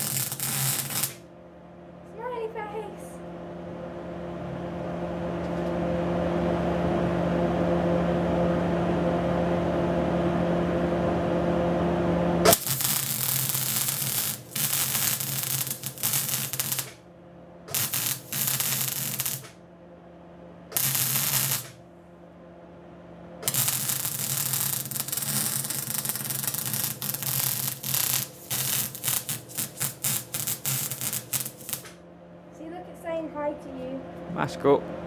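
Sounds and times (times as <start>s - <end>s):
welder arc crackling: 0.0s - 1.2s, 12.5s - 17.0s, 17.7s - 19.6s, 20.7s - 21.8s, 23.4s - 32.0s
steady low hum: 0.0s - 35.0s.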